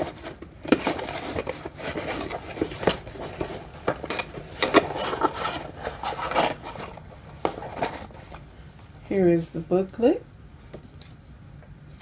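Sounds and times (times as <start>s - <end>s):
packaging rustling: 0.0s - 8.6s.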